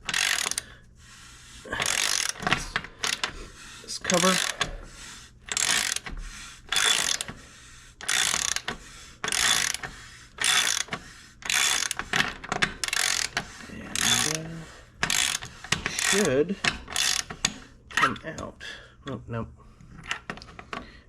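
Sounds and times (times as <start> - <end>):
ratchet wrench clicking: 0.0 - 0.7, 1.8 - 3.3, 4.0 - 4.7, 5.5 - 6.1, 6.7 - 7.3, 8.0 - 13.4, 14.0 - 14.4, 15.0 - 17.6.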